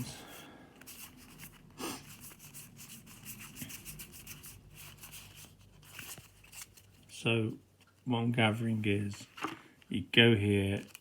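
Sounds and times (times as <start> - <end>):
packaging rustling: 0.0 - 7.1, 10.6 - 11.0.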